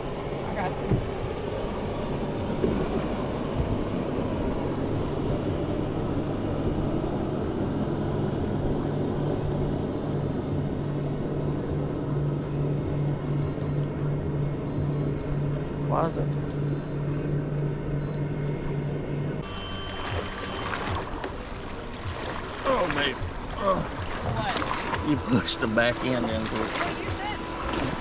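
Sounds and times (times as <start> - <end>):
boat motor humming: 0.0 - 28.0
continuous wash of noise: 0.0 - 28.0.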